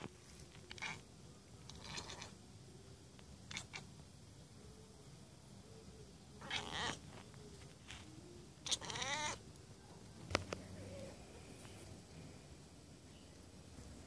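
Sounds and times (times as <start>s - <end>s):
cat chattering: 0.7s - 2.4s, 3.4s - 3.9s, 6.4s - 7.0s, 8.6s - 9.4s.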